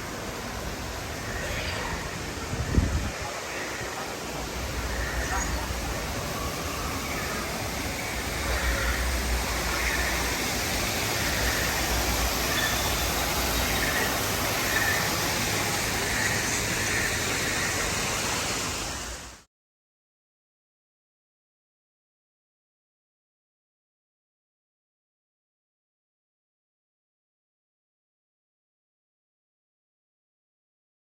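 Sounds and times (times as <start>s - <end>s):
steady rushing noise: 0.0s - 19.4s.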